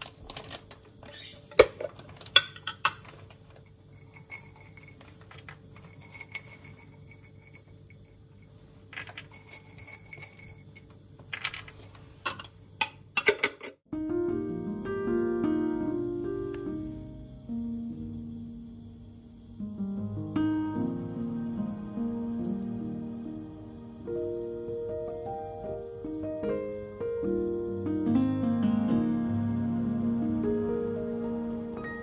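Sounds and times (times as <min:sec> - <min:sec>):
faint steady hum: 0:00.0 - 0:32.0
dishes and cutlery clinking: 0:01.4 - 0:08.1, 0:08.9 - 0:11.6.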